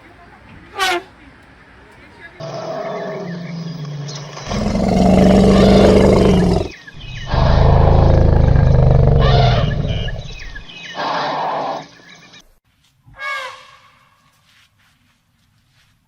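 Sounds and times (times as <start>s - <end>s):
elephant calling: 2.4s - 11.9s.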